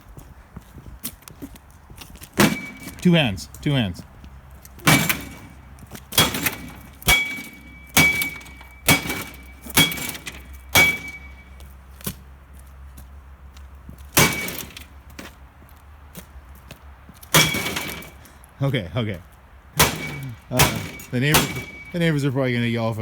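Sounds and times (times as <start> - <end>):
bat smashing microwave oven: 2.4 - 3.1, 4.8 - 5.5, 6.2 - 11.3, 14.2 - 14.9, 17.3 - 18.2, 19.8 - 22.0.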